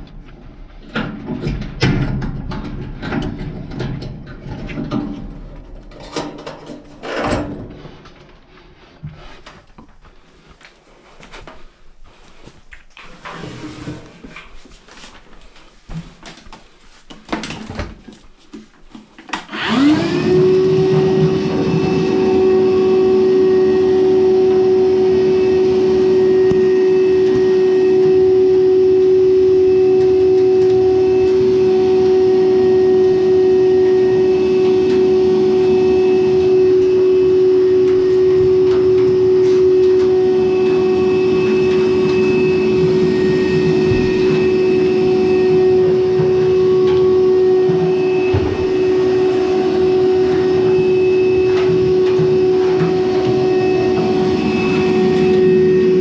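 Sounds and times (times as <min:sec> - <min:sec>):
clothes dryer motor humming: 0:18.9 - 0:56.0.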